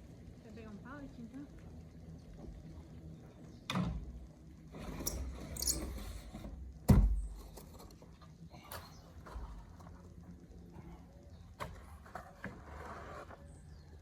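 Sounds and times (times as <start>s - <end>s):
pallet scraping: 11.7s - 13.5s.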